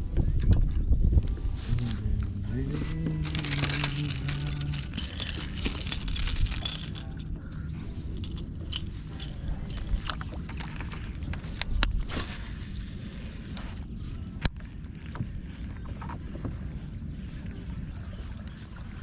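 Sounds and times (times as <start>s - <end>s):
wind: 0.0s - 19.0s
fishing tackle clicking and rattling: 3.2s - 7.3s, 8.1s - 12.2s
water lapping around boat: 11.7s - 19.0s.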